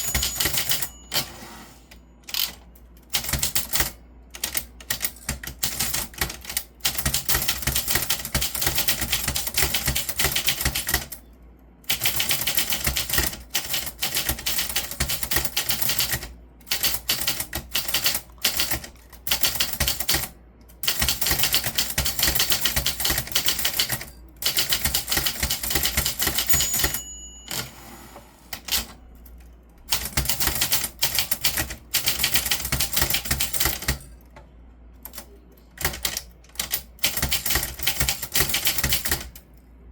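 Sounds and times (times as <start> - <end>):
typewriter key strikes: 0.0 - 1.4, 35.8 - 39.4
typewriter bell ring: 0.0 - 7.9, 22.3 - 29.3.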